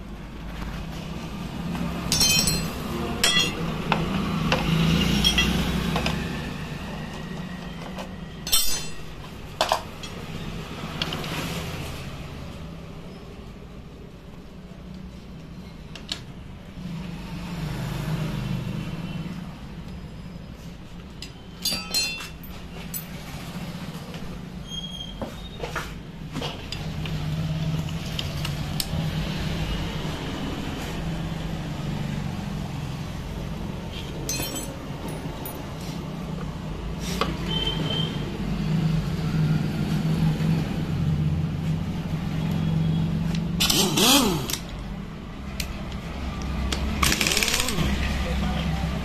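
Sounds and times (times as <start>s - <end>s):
metal tools clinking: 2.1s - 3.8s, 5.1s - 6.0s, 8.4s - 10.3s, 21.2s - 23.3s, 34.0s - 35.9s, 47.0s - 48.0s.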